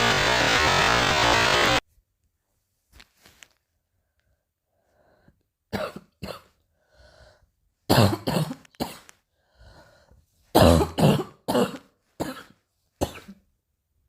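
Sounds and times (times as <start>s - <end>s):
person coughing: 5.7s - 6.6s, 7.9s - 9.1s, 10.6s - 13.4s.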